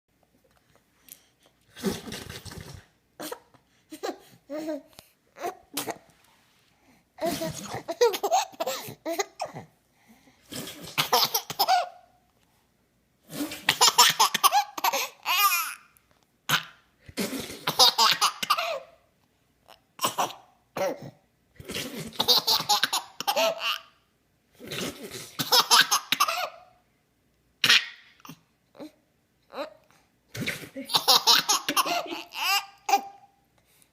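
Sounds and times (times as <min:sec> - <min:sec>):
person laughing: 0:31.7 - 0:32.5.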